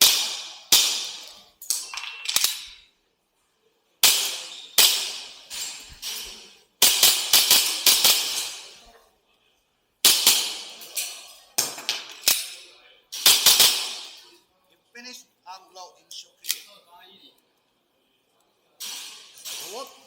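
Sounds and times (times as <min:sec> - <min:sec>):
airsoft pistol firing: 0:13.2 - 0:14.2.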